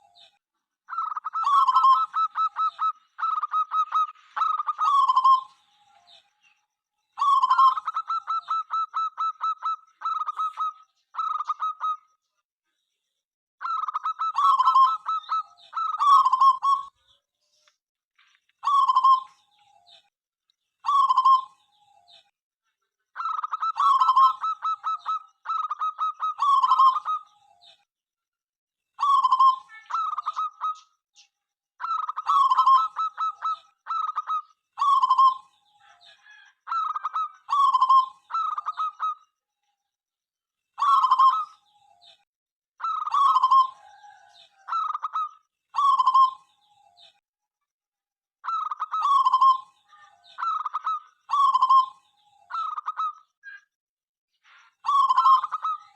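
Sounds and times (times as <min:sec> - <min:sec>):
dove cooing: 0:00.9 - 0:05.5, 0:07.2 - 0:12.0, 0:31.8 - 0:39.2, 0:40.8 - 0:41.4, 0:42.8 - 0:46.4.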